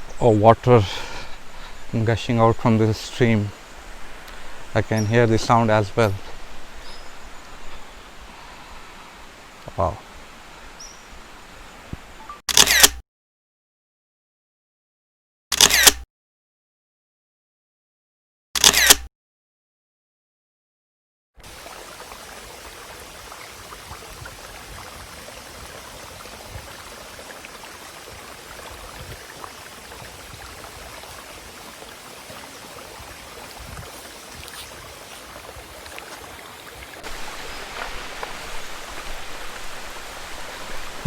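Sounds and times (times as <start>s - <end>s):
forest stream flowing: 0.0s - 12.2s, 21.4s - 41.0s.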